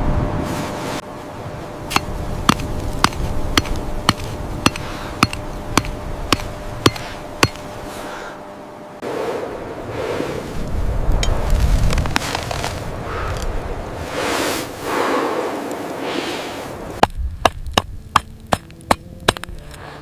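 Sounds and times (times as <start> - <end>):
sharp metallic striking impacts: 1.9 - 7.8.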